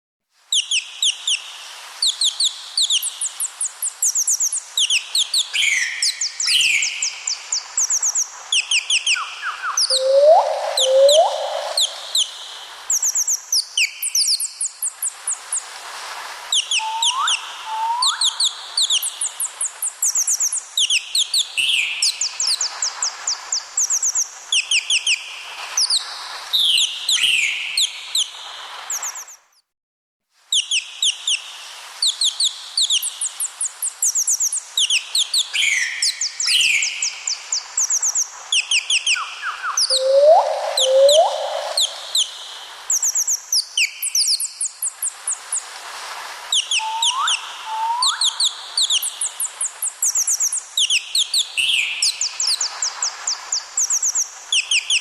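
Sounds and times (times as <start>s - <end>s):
parrot chirping and whistling: 8.5s - 12.3s, 16.6s - 19.1s, 37.9s - 42.3s, 46.5s - 49.2s.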